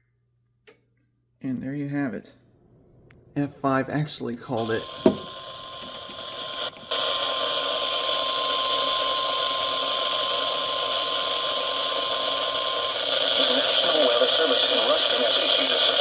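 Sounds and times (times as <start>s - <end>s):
radio static hiss: 4.0s - 16.0s
thin steady whistle: 7.1s - 13.6s.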